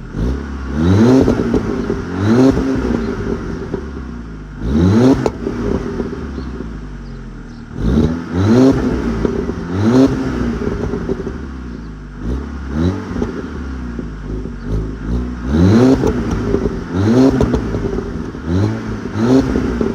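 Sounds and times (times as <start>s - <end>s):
car engine revving: 0.0s - 19.9s
exhaust pops and crackles: 1.2s - 4.1s, 5.1s - 7.9s, 8.7s - 11.6s, 13.0s - 19.9s.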